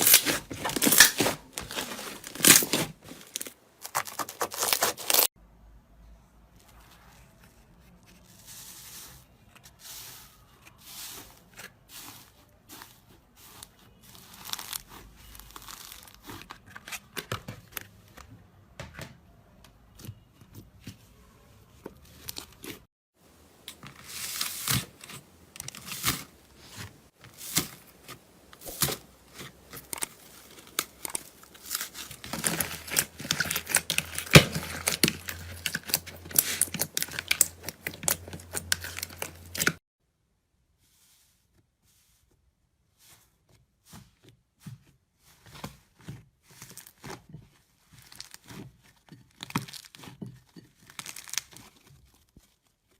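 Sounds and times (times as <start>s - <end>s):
slime crackling and popping: 29.7s - 39.8s, 50.8s - 51.8s.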